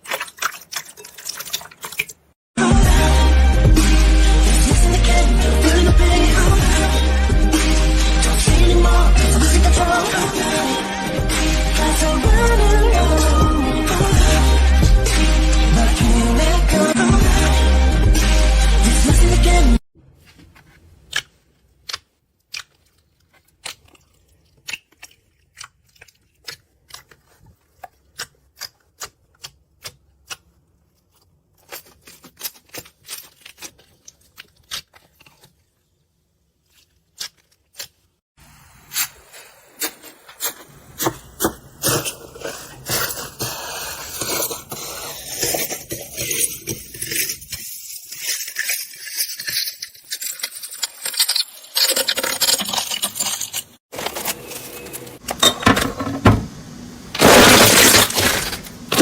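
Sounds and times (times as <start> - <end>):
slime crackling and scraping: 20.2 - 54.6, 57.2 - 59.0.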